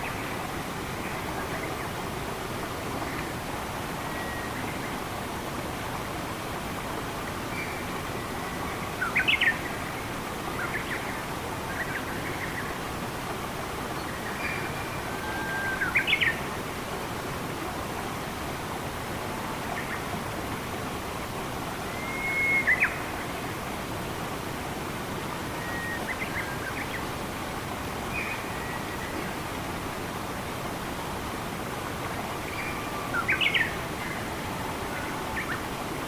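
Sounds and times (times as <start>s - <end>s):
flowing water rushing: 0.0s - 36.0s
songbird whistling calls: 14.3s - 16.4s, 21.9s - 23.1s, 25.6s - 26.8s.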